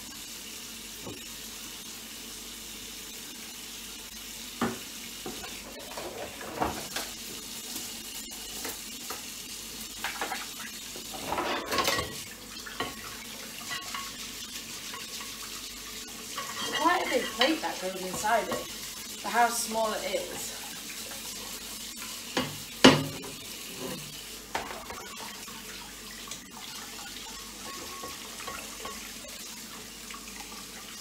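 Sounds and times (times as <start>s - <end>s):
dishware clinking and knocking: 11.1s - 12.2s, 22.4s - 25.2s, 27.6s - 29.1s.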